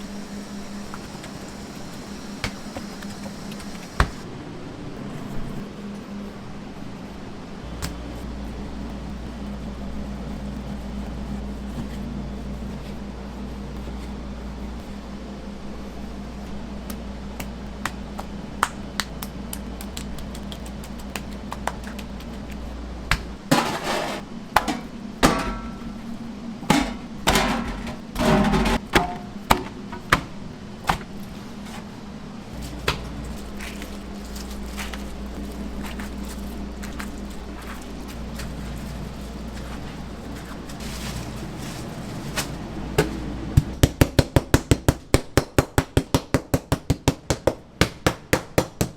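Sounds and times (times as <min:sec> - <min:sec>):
steady low hum: 0:00.0 - 0:48.9
kitchen knocks and bangs: 0:23.5 - 0:26.0, 0:26.7 - 0:30.3.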